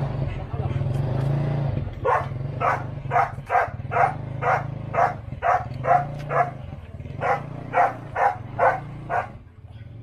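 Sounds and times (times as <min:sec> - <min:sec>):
dog barking: 0:02.0 - 0:06.6, 0:07.2 - 0:09.4.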